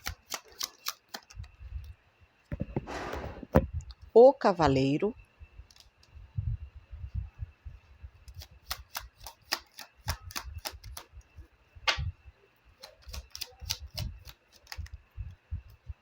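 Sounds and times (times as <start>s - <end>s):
cards clicking and tapping: 0.0s - 1.4s, 8.4s - 11.1s.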